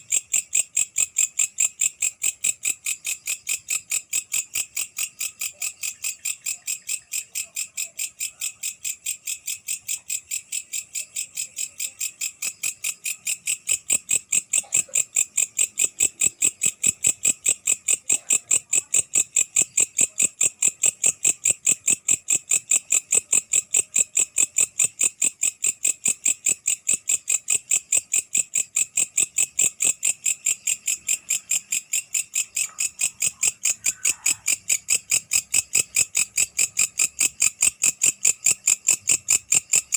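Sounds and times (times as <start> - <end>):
katydid calling: 29.4 - 37.7.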